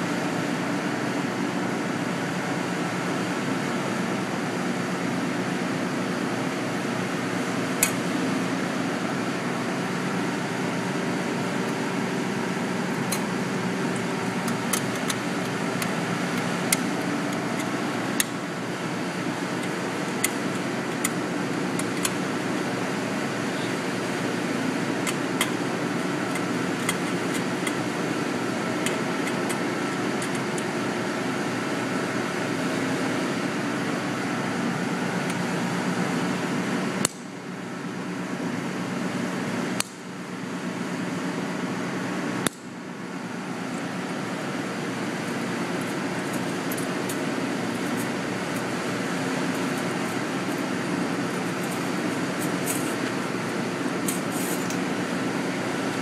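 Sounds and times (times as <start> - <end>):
faint hum: 0.0 - 56.0
fan-like machine noise: 0.0 - 56.0.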